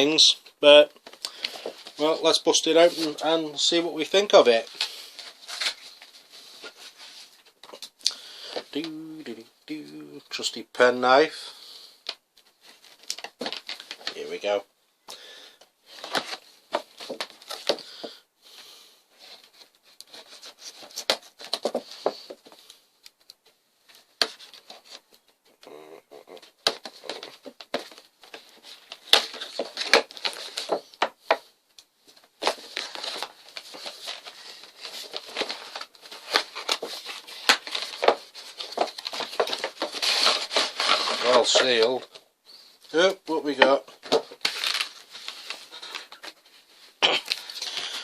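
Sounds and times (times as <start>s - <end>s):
packaging crinkling and tearing: 32.4s - 42.2s, 44.0s - 46.3s.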